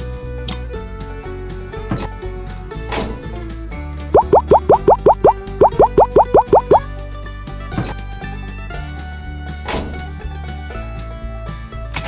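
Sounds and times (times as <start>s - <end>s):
plucked string tune: 0.0s - 12.0s
steady bass line: 4.2s - 7.0s.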